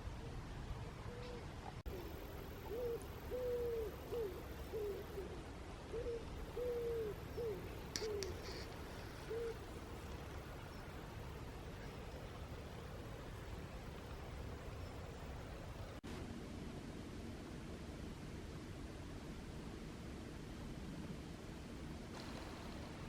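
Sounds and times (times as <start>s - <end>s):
wood pigeon cooing: 1.1s - 9.8s.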